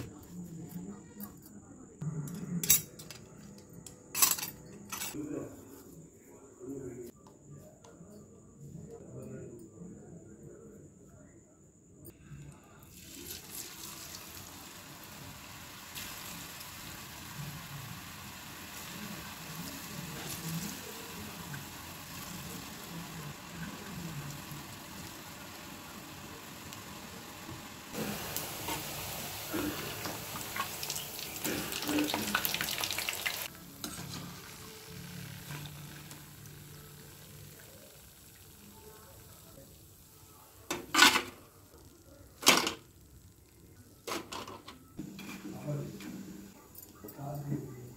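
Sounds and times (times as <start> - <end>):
dough deep-frying in oil: 12.8 - 40.1.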